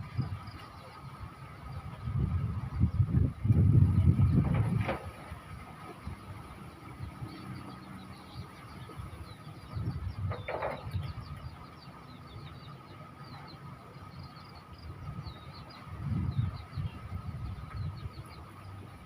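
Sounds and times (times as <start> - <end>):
low rumbles: 1.7 - 19.0
small birds chirping: 5.8 - 19.0.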